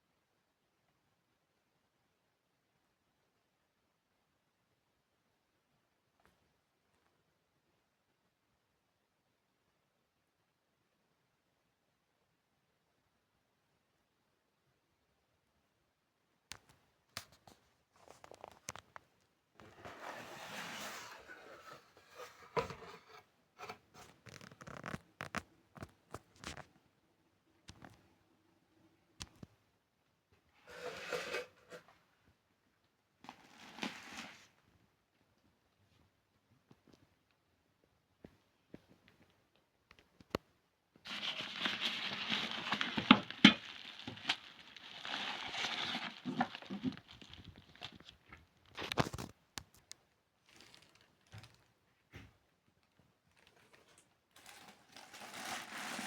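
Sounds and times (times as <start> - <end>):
crinkling and rustling: 16.5 - 27.0, 27.6 - 28.2, 33.2 - 37.4, 38.2 - 56.0.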